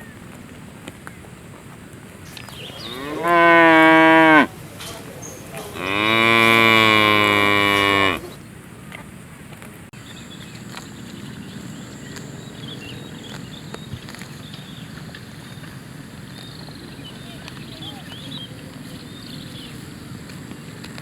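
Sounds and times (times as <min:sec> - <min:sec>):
cow mooing: 0:02.7 - 0:04.6, 0:05.6 - 0:08.4.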